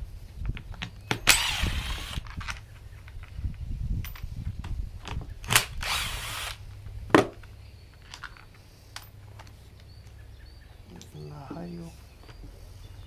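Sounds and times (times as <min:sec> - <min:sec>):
power drill running in bursts: 0:01.3 - 0:02.2, 0:05.8 - 0:06.6.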